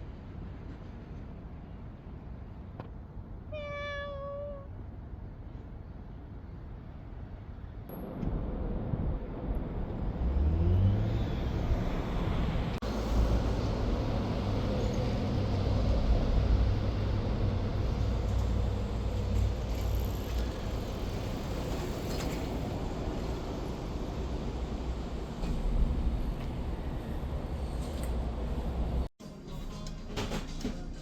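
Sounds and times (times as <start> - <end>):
vehicle engine rumbling: 8.0 - 29.1.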